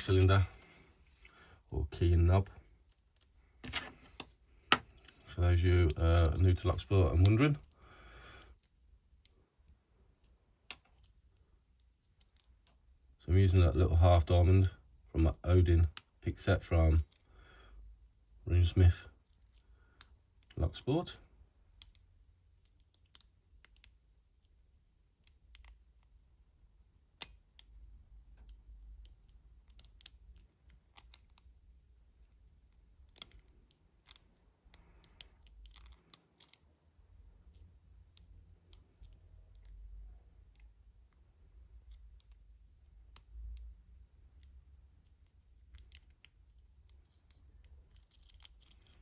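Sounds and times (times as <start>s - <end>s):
lock pick clicks and scratches: 21.7s - 26.2s, 27.0s - 36.8s, 37.4s - 40.8s, 41.6s - 49.0s.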